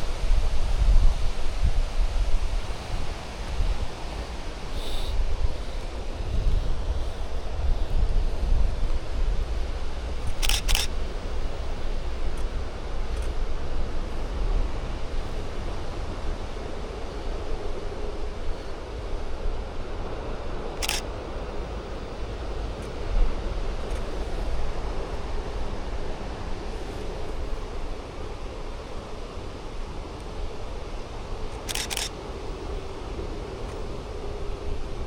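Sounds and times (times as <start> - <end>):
steady outdoor rushing: 0.0 - 35.0
camera shutter click: 10.2 - 10.9, 20.8 - 21.0, 31.6 - 32.1.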